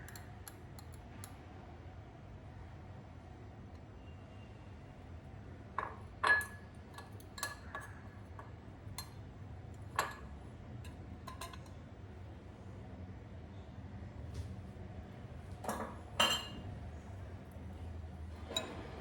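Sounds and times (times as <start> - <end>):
kitchenware clinking: 5.8 - 8.0, 15.6 - 16.8, 18.3 - 19.0.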